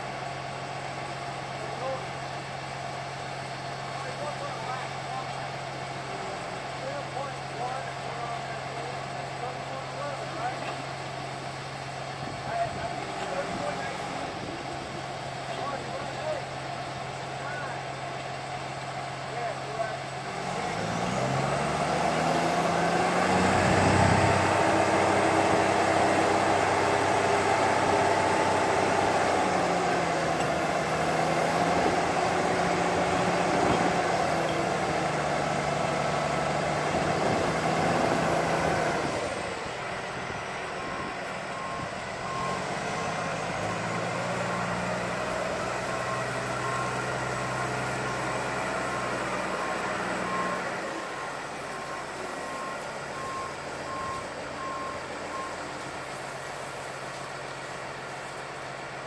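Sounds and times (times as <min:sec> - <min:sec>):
heavy vehicle engine running: 0:00.0 - 0:59.0
reversing alarm beeps: 0:40.8 - 0:43.3, 0:45.5 - 0:47.2, 0:49.0 - 0:55.8.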